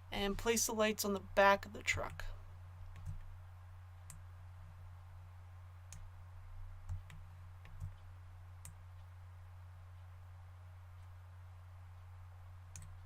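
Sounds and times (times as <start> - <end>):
low electrical hum: 0.0 - 13.0
computer mouse clicking: 2.9 - 3.3, 5.9 - 6.1, 6.8 - 9.1, 12.7 - 13.0.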